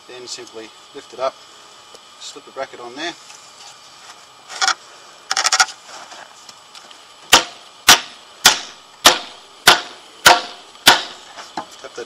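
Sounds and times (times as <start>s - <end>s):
hammer striking metal bracket: 7.3s - 11.2s.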